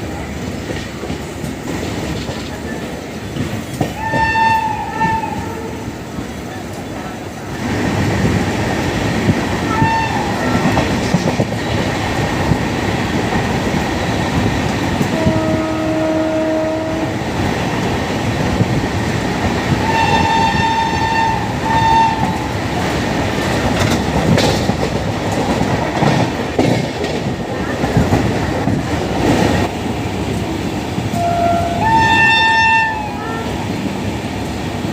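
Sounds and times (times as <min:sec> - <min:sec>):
train clattering: 0:00.0 - 0:34.9
shrill locomotive horn blasts: 0:04.0 - 0:05.8, 0:09.7 - 0:10.7, 0:15.1 - 0:17.2, 0:19.8 - 0:22.4, 0:31.1 - 0:33.6
lower-pitched horn: 0:19.8 - 0:22.4, 0:31.2 - 0:33.5.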